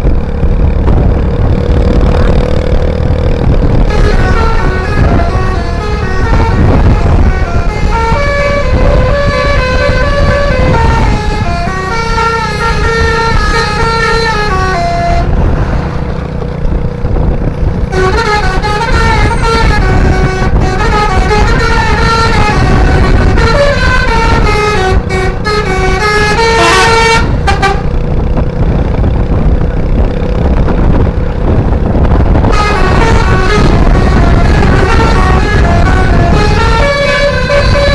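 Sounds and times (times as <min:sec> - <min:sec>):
bus engine low rumble: 0:00.0 - 0:37.9
musical air horn melody: 0:03.9 - 0:15.4, 0:17.9 - 0:28.0, 0:32.2 - 0:37.9.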